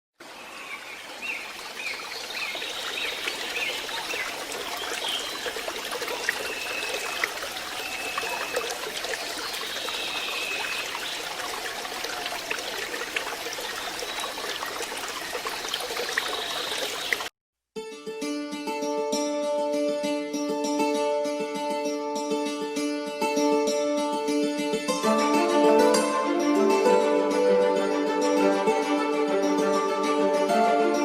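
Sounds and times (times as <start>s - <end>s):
water trickling: 0.2s - 17.3s.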